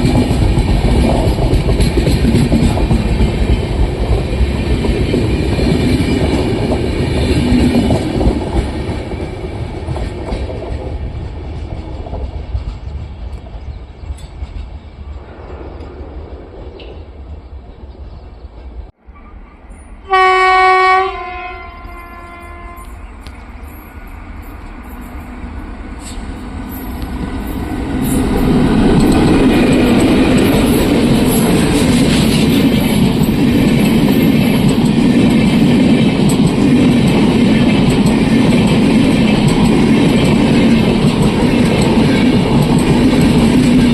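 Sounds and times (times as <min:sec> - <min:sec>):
train wheels rumbling on rails: 0:00.0 - 0:43.9
train horn blast: 0:20.0 - 0:23.1.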